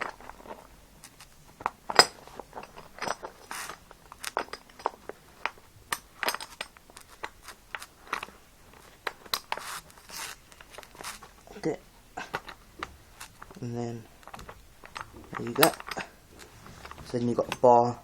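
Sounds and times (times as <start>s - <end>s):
metal seat clamp clicks and scrapes: 0.0s - 8.4s, 14.2s - 17.7s.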